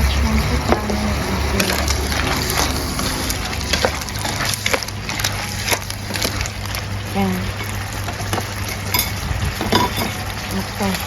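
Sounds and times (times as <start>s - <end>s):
steady sizzle: 0.0s - 11.0s
shells and spatula clacking on pan: 1.6s - 6.9s, 7.5s - 10.2s.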